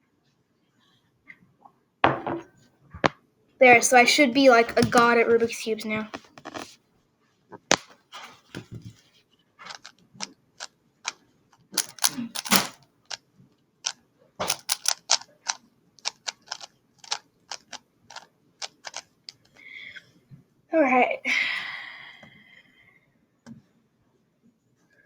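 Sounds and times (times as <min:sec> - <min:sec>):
puzzle cube clicking: 0:09.7 - 0:09.9, 0:11.8 - 0:12.8, 0:14.4 - 0:19.5.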